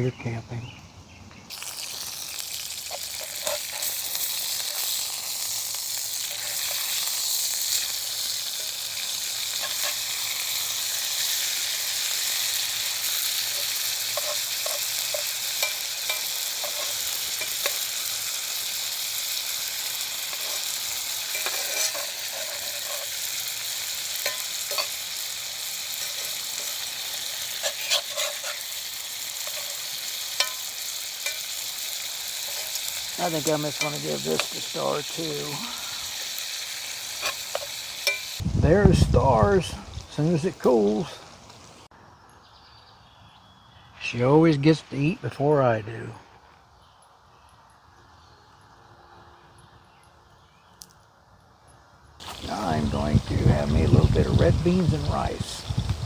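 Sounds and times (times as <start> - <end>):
sharp pops and crackles: 1.4 - 41.6, 52.2 - 56.0
meat sizzling in a skillet: 1.5 - 41.9, 52.2 - 56.0.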